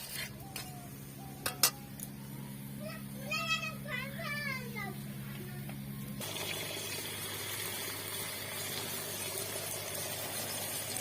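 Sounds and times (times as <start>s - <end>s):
water running: 6.2s - 11.0s.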